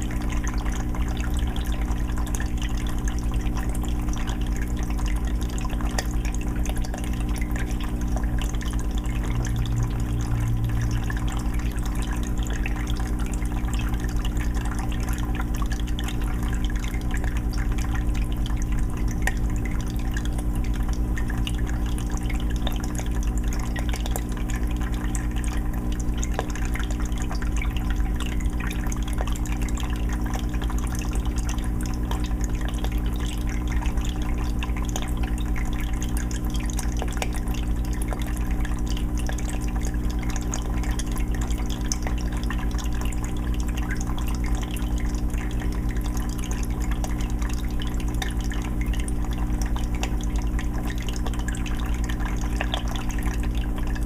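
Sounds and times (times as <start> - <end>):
low motor hum: 0.0 - 54.0
water splashing and bubbling: 0.0 - 54.0.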